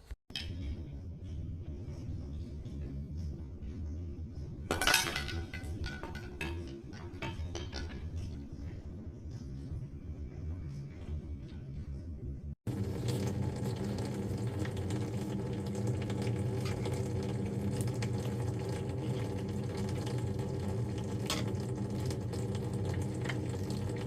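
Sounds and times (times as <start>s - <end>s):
steady low hum: 0.4s - 24.0s
water splashing into tank: 12.7s - 24.0s.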